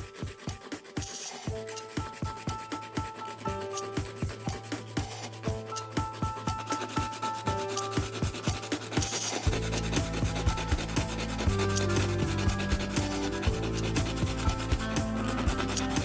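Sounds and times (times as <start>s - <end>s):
hand sanding plastic: 0.0s - 16.0s.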